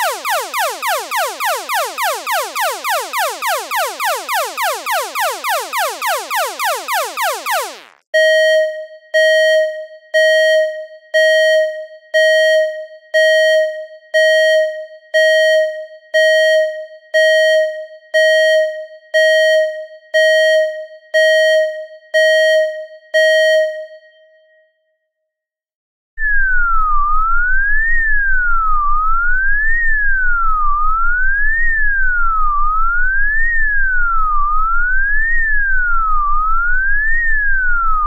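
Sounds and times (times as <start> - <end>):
falling electronic sweep: 0.0 - 7.9.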